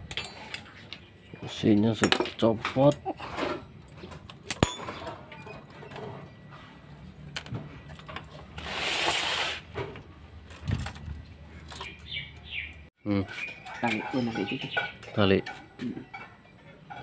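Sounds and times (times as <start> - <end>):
hand tools clinking on metal: 0.0 - 6.5, 13.3 - 17.0
hiss: 8.6 - 9.6.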